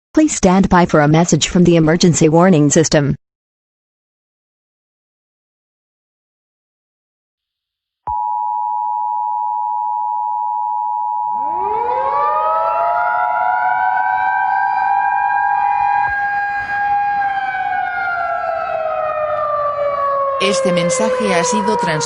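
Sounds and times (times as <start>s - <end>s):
two-tone alert signal: 8.1s - 11.7s
civil-defense siren winding: 11.3s - 22.0s.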